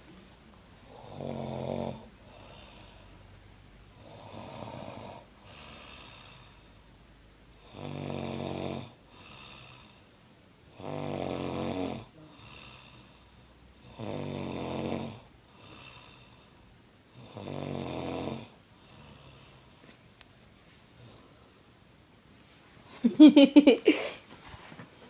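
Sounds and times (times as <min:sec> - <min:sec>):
woman snoring: 0:00.9 - 0:03.1, 0:04.0 - 0:06.6, 0:07.6 - 0:10.0, 0:10.8 - 0:13.1, 0:13.8 - 0:16.3, 0:17.2 - 0:19.4.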